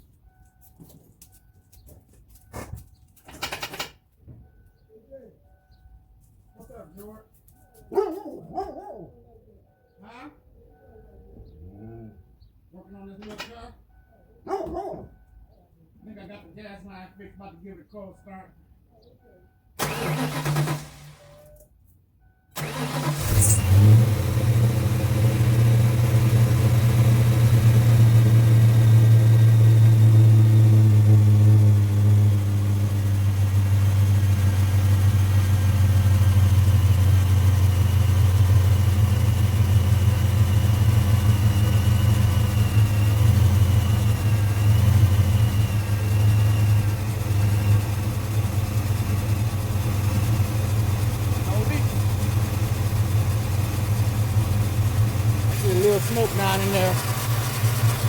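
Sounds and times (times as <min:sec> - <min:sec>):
car engine starting and idling: 0:19.7 - 0:21.7, 0:22.5 - 0:58.0.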